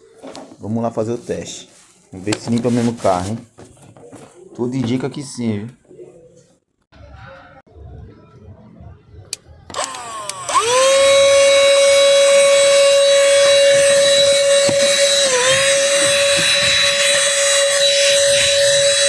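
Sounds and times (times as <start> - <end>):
handheld vacuum motor whining: 9.7 - 19.0.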